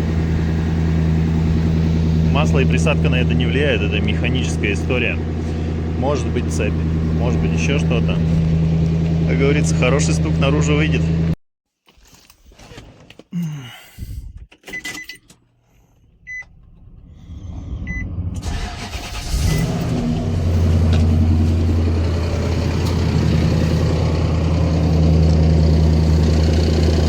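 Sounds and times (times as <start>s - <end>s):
car engine starting and idling: 0.0s - 11.4s, 14.5s - 27.0s
short electronic beeps: 17.9s - 18.1s.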